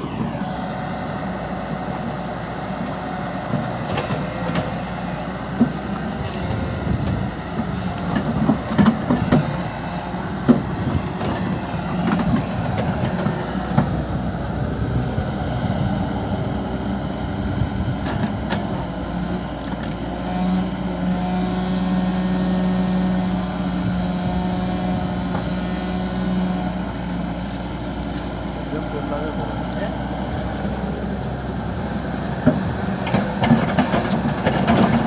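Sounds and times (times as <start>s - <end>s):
heavy machinery engine running: 0.0s - 35.0s.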